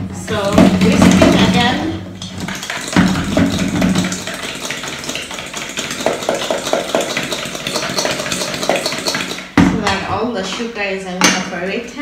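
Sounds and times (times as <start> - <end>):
whisk beating in a bowl: 0.4 - 9.6.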